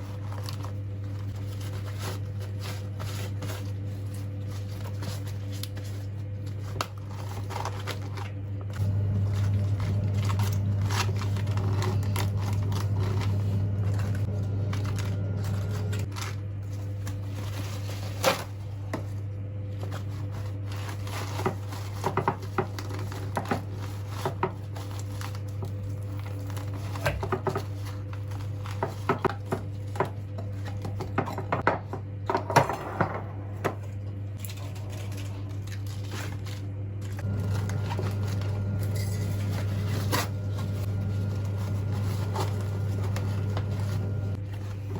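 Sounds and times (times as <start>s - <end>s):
steady low hum: 0.0s - 44.9s
dishes and utensils clinking: 38.8s - 40.1s.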